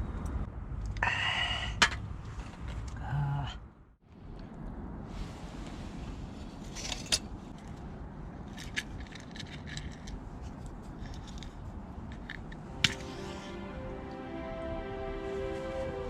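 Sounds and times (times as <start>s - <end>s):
steady low rush: 12.5s - 16.0s.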